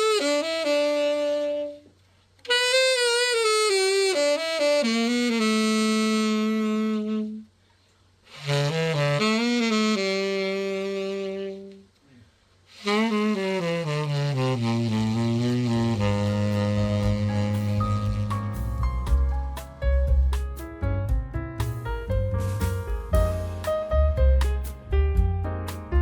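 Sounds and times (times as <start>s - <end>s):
tenor saxophone melody: 0.0s - 7.6s, 8.2s - 12.0s, 12.7s - 19.3s.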